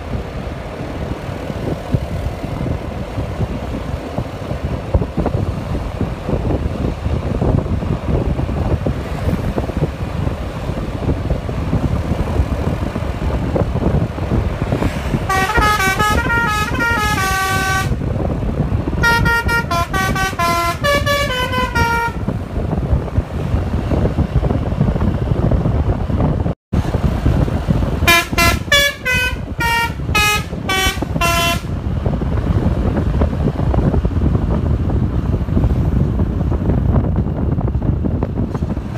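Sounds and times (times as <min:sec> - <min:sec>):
steady low rumble: 0:00.0 - 0:38.9
bus musical horn playing tune: 0:14.8 - 0:18.2, 0:18.9 - 0:22.5, 0:28.0 - 0:31.9.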